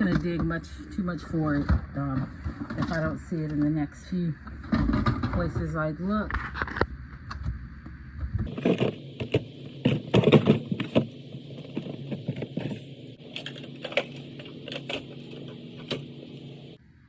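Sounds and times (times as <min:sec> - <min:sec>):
rummaging through household items: 0:08.5 - 0:16.8.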